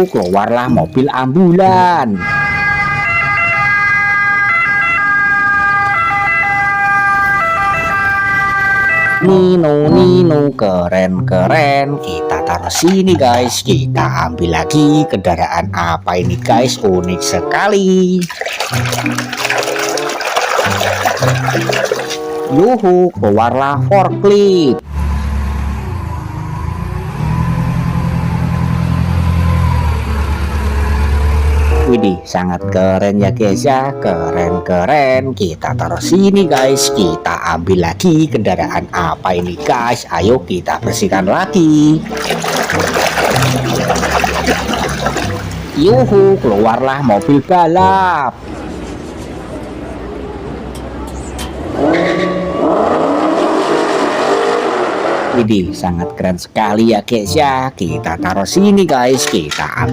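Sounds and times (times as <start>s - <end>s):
electronic ambulance siren: 2.0s - 10.2s.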